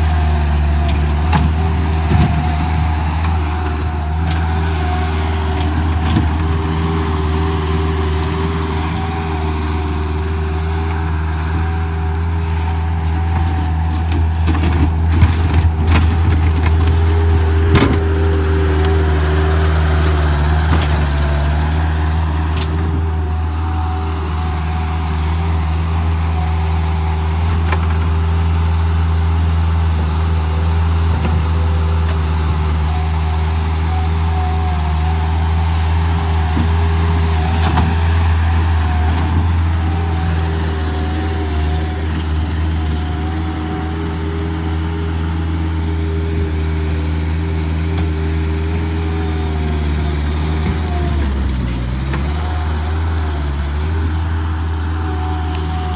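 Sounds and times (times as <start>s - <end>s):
diesel engine running: 0.0s - 55.9s.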